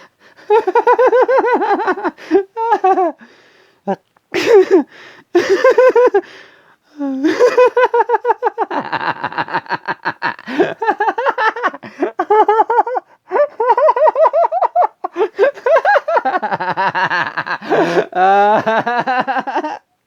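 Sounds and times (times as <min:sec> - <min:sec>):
person laughing high-pitched: 0:00.7 - 0:03.2, 0:07.2 - 0:19.8.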